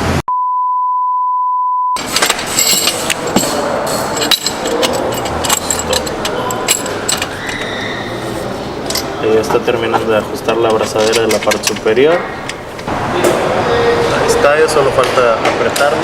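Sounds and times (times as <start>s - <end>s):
steady high beep: 0.3s - 2.0s
hand tools clinking on metal parts: 2.0s - 12.6s.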